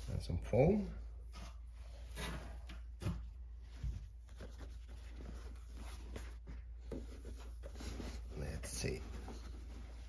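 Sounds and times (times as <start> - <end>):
packing foam and cloth rustling: 3.6 - 10.0.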